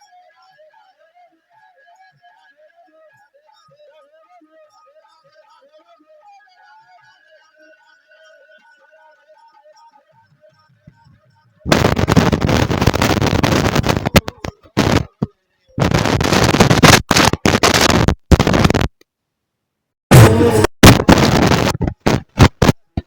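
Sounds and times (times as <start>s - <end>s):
harsh static noise: 11.7s - 19.0s, 20.1s - 23.0s.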